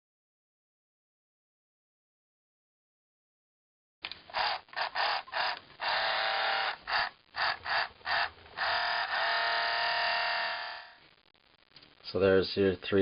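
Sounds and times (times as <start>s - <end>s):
toy motor raspy buzz: 4.3s - 11.0s.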